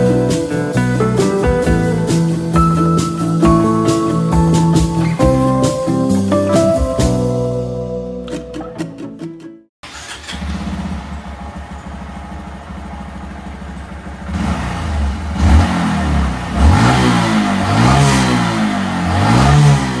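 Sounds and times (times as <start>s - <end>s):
motorcycle engine idling and revving: 9.8s - 20.0s.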